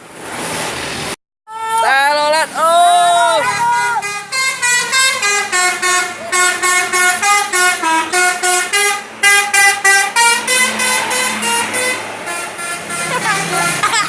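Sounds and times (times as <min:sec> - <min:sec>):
bus musical horn tune: 0:03.4 - 0:14.0.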